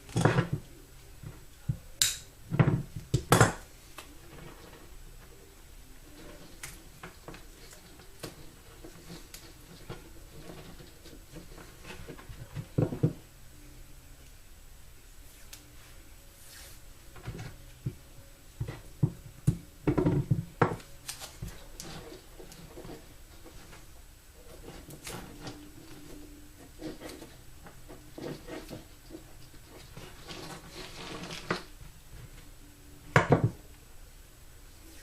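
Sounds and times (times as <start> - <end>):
wires tapping and knocking: 0.0 - 4.8, 6.2 - 13.2, 18.6 - 31.9
tape crackling off the roll: 18.6 - 32.4.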